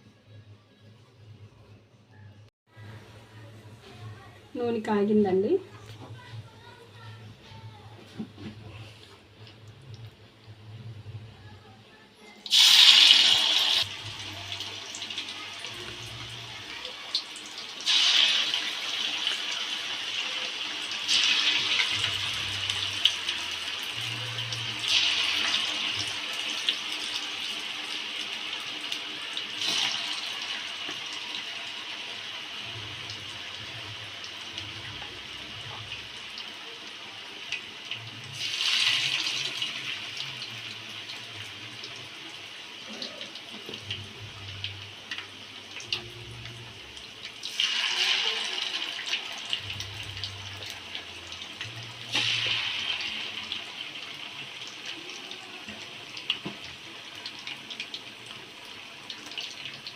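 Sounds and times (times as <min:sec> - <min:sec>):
chicken sizzling in hot oil: 0:12.4 - 0:59.9.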